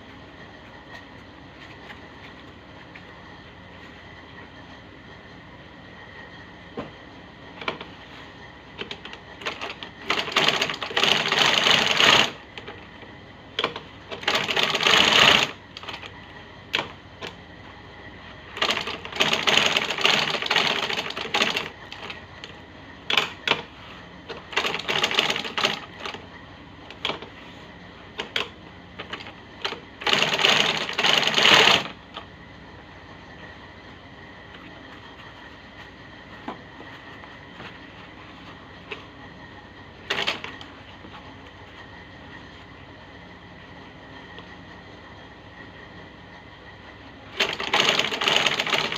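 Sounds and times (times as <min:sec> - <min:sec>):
sewing machine rapid ticking: 0:08.8 - 0:12.4, 0:13.6 - 0:16.1, 0:18.5 - 0:22.2, 0:24.3 - 0:26.2, 0:28.2 - 0:32.0, 0:40.1 - 0:40.6, 0:47.4 - 0:48.9
sewing machine clicks: 0:40.1 - 0:40.7, 0:47.4 - 0:48.9.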